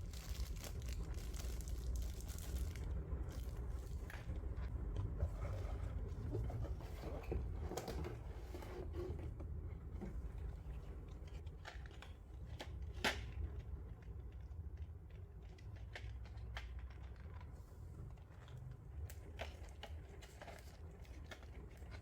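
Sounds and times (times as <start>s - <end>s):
packaging rustling: 0.0s - 4.7s.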